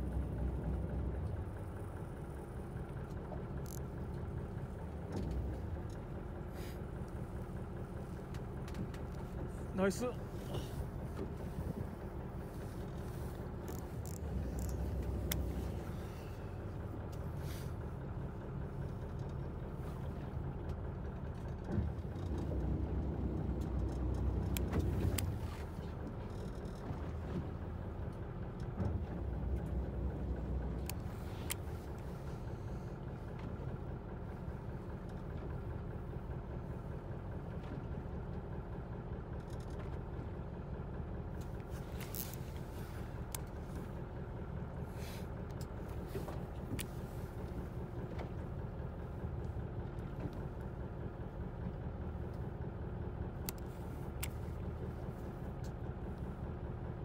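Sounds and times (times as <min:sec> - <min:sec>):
boat engine running: 0:00.0 - 0:57.0.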